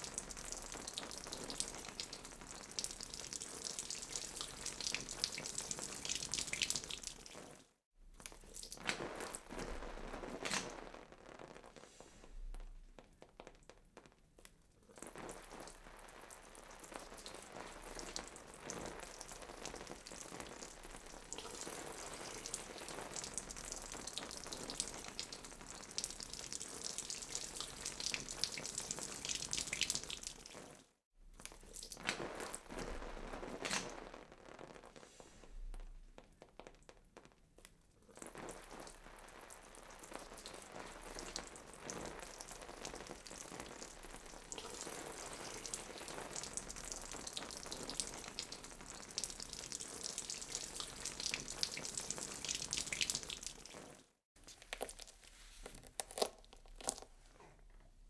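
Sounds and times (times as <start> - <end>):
wet squelching gore effects: 52.4 - 57.4.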